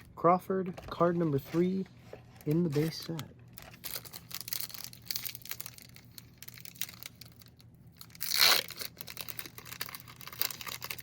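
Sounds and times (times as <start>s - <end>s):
foil wrapper crinkling: 0.9s - 11.0s
foil wrapper ripping: 2.4s - 11.0s.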